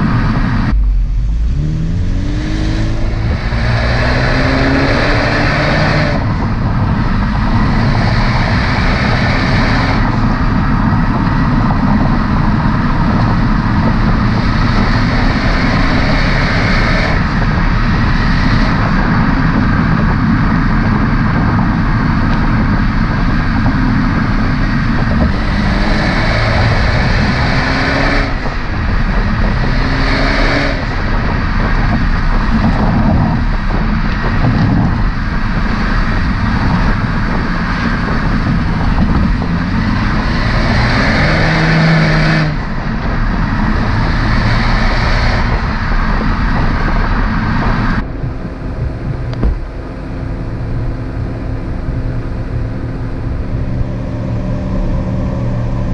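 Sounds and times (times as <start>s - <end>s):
car exhaust engine note: 0.0s - 55.9s
road and wind noise: 0.0s - 55.9s.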